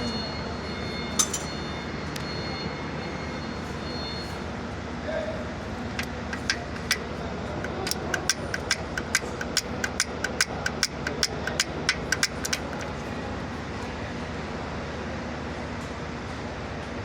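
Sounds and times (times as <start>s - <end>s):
truck diesel engine running: 5.5s - 13.7s
sharp metallic taps: 6.0s - 12.9s.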